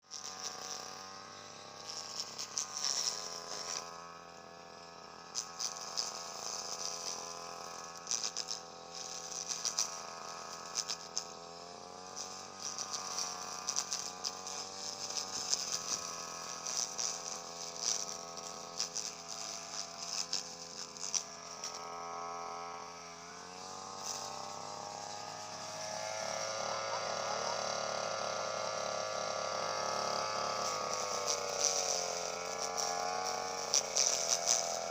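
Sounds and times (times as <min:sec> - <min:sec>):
lawn mower motor running: 0:00.0 - 0:34.9
scratchy rattle: 0:00.2 - 0:04.1, 0:12.0 - 0:22.6, 0:29.8 - 0:34.9.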